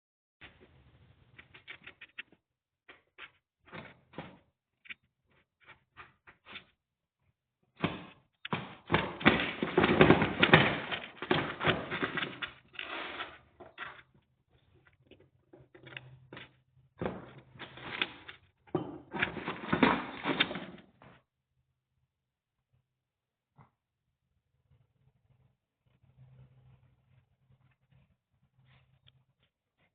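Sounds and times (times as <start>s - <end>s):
scrabbling and knocking inside box: 7.8s - 13.2s, 19.0s - 21.0s.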